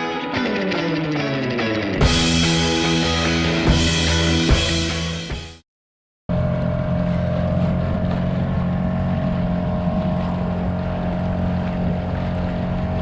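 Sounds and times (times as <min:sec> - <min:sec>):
boat engine running: 0:06.3 - 0:13.0.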